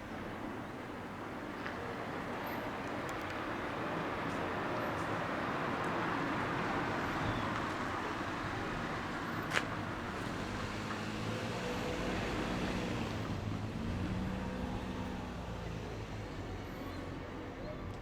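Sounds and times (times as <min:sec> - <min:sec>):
low engine hum: 0:06.4 - 0:18.0.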